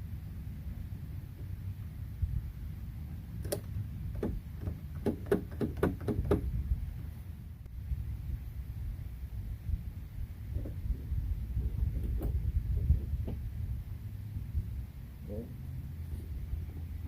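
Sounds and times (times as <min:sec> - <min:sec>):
door lock part clicking and knocking: 0:03.4 - 0:06.5.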